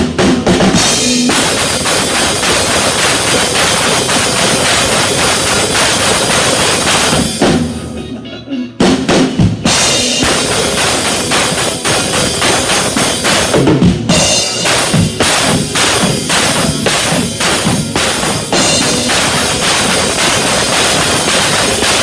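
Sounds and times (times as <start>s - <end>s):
drum hits: 0.0s - 7.9s, 8.8s - 22.0s
country band playing: 9.7s - 22.0s.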